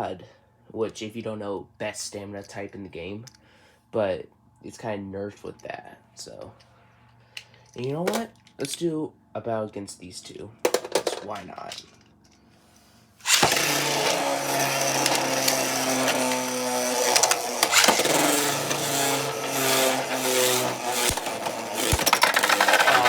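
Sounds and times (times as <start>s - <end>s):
spinning tops clacking: 13.2s - 23.0s
spinning tops whirring: 13.2s - 23.0s.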